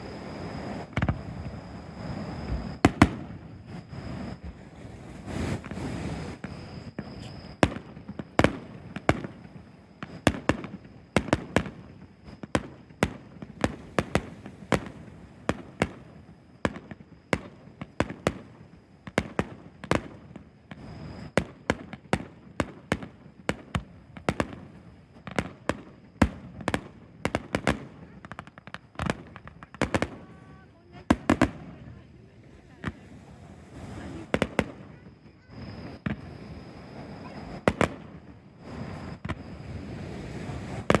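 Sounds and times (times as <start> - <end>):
fireworks bangs: 0.8 - 1.5, 2.5 - 3.5, 19.1 - 36.4, 37.0 - 41.0.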